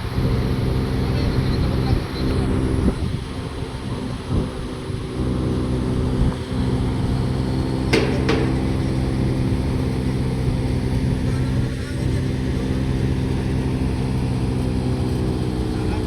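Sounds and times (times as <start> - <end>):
sharp knocks: 7.9 - 11.3
machine humming: 7.9 - 14.3.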